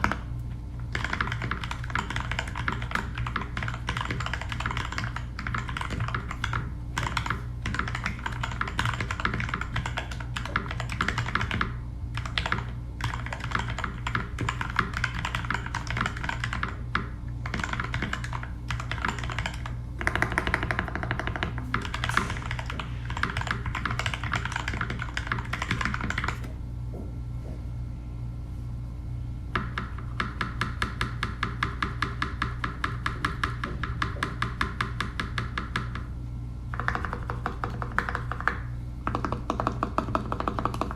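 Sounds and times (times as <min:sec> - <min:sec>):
mechanical keyboard typing: 0:00.9 - 0:26.5, 0:36.7 - 0:40.9.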